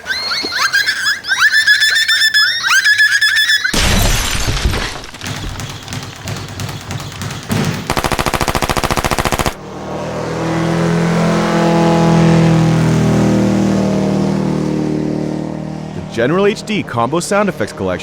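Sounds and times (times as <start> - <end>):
automatic gunfire: 7.5 - 9.6
vehicle engine passing by: 9.6 - 18.0.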